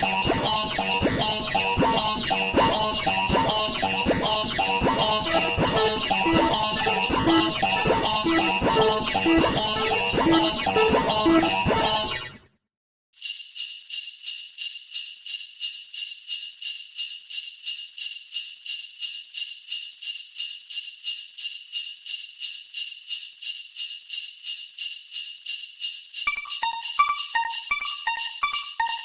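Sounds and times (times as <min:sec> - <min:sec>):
music: 0:00.0 - 0:12.4, 0:26.3 - 0:29.0
sleigh bells shaken: 0:00.0 - 0:12.4, 0:13.2 - 0:29.0.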